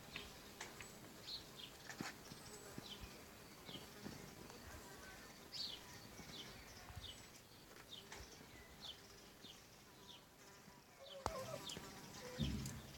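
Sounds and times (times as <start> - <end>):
bird chirping: 11.0 - 12.9.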